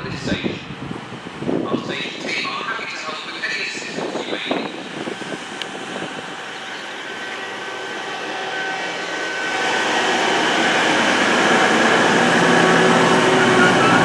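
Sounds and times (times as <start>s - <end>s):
diesel train approaching: 2.7s - 14.0s
faint whine: 12.2s - 14.0s.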